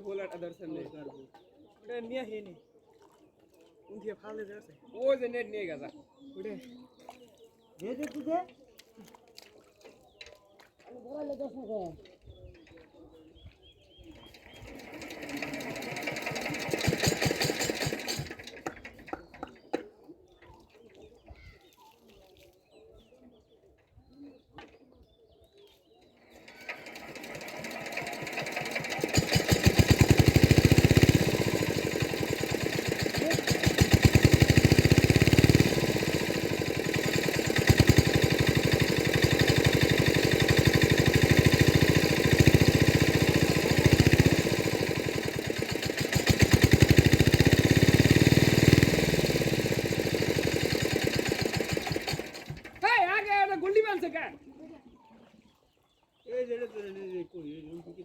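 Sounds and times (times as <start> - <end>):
small engine running: 14.2 - 19.6, 26.2 - 52.9.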